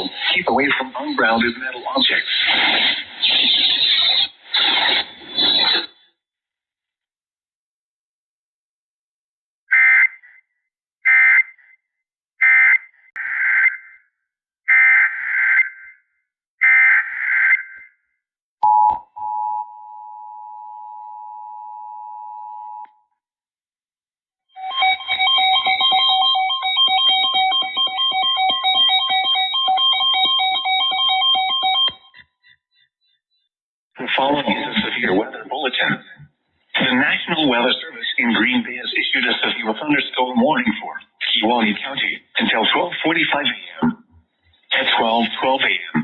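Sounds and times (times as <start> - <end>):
screechy warbling data bursts: 0.0 - 6.0, 24.6 - 32.6
two-tone attention signal: 24.6 - 32.1.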